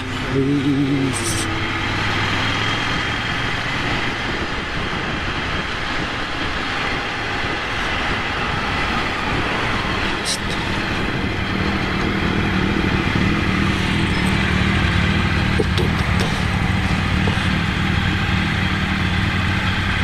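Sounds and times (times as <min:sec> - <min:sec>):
motorcycle engine at speed: 0:00.0 - 0:20.0
wind rushing: 0:01.4 - 0:15.6.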